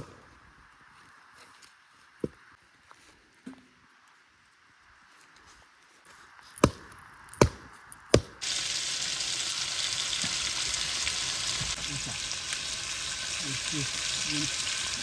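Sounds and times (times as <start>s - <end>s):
food sizzling in a hot pan: 8.4s - 15.0s.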